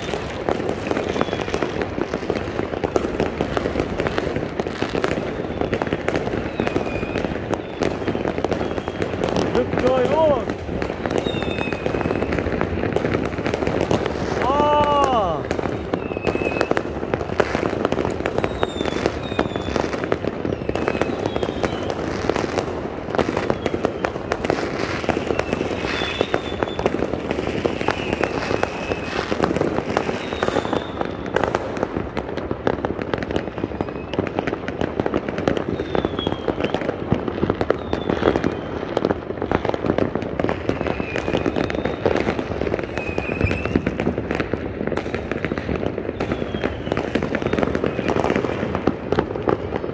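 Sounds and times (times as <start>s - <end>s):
firework whistles: 0.0s - 2.1s, 4.8s - 31.6s, 33.6s - 34.4s, 35.4s - 39.8s, 40.5s - 44.0s, 45.2s - 49.9s
fireworks bangs and crackling: 0.0s - 49.9s.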